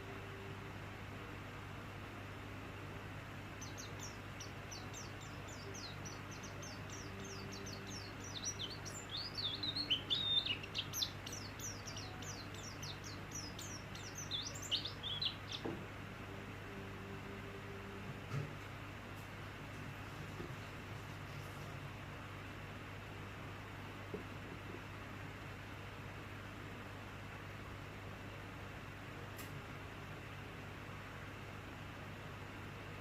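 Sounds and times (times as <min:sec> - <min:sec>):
steady low hum: 0:00.0 - 0:33.0
bird chirps and trills: 0:03.5 - 0:15.8.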